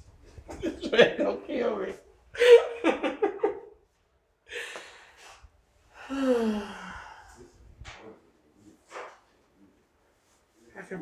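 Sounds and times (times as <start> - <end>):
long voiced sigh: 6.0 - 7.5.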